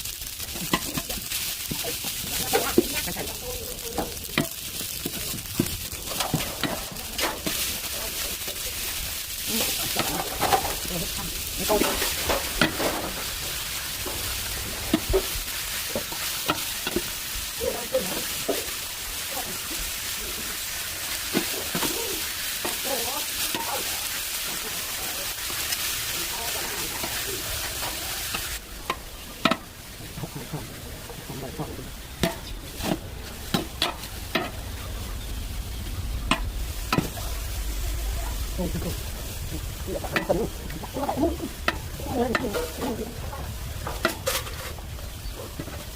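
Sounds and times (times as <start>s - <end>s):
food sizzling in a hot pan: 0.0s - 45.9s
utensil scraping a pan: 43.8s - 44.9s.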